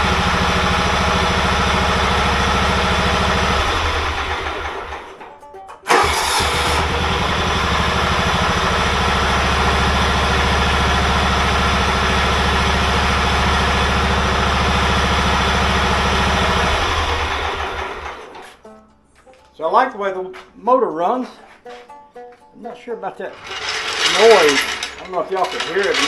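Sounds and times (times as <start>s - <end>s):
tractor engine running: 0.0s - 5.3s, 5.9s - 18.6s, 23.3s - 26.0s.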